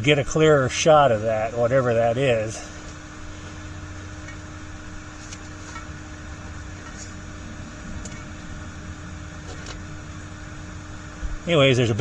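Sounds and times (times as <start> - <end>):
machine hum and hiss: 0.0 - 12.0
low rumble: 5.8 - 11.5.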